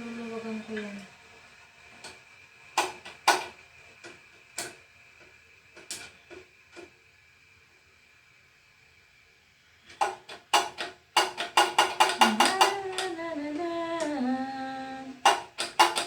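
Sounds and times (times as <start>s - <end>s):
sharp drum hits: 11.6s - 12.8s
person singing over a beat: 12.1s - 15.4s.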